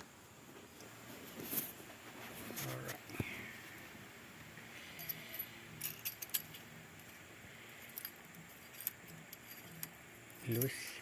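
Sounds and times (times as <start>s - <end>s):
small metal parts clinking: 4.9s - 11.0s.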